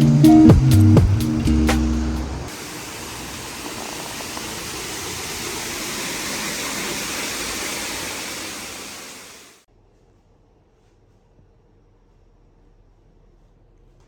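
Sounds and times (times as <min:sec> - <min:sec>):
water rushing: 0:00.0 - 0:09.6.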